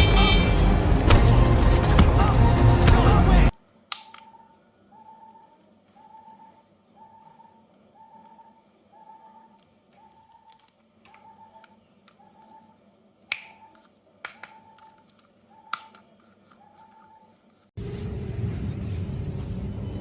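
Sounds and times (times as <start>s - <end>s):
sharp clicks: 3.6s - 17.7s.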